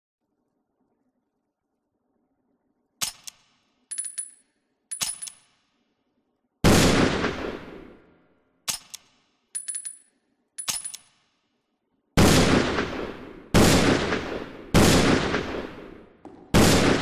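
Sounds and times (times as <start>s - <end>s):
metallic clicks of gun action: 3.0s - 5.7s, 8.6s - 11.4s
loud gunshot with ringing: 6.6s - 7.9s, 12.2s - 17.0s.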